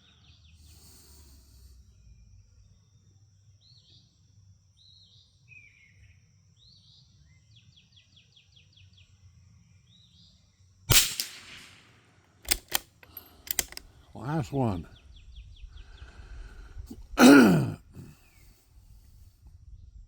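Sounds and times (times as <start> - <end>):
rifle shot with echo: 10.9 - 12.9
birds chirping: 12.5 - 16.5.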